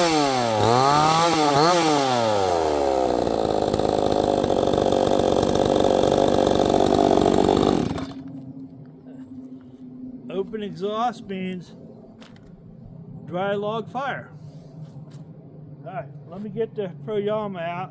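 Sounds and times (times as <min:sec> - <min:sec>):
chainsaw revving and cutting wood: 0:00.0 - 0:08.3.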